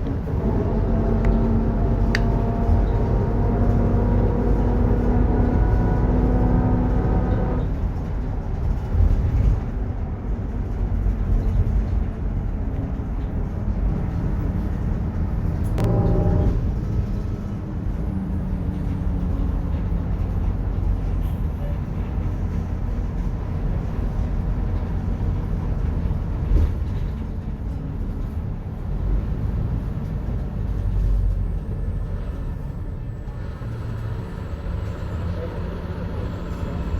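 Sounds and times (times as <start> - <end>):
bus engine rumble: 0.0 - 36.9
differential whine: 15.8 - 16.9.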